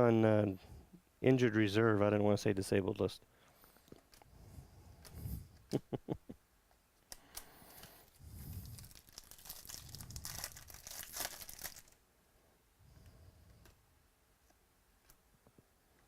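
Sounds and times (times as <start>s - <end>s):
foil wrapper tearing and crinkling: 8.1s - 12.0s.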